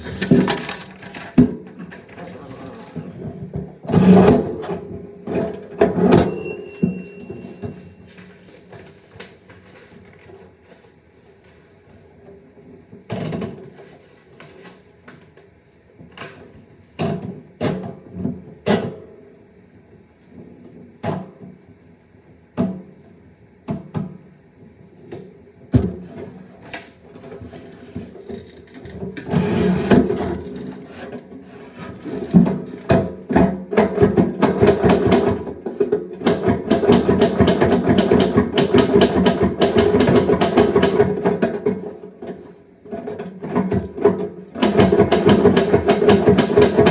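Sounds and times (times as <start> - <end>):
typewriter typing: 0.0 - 1.4.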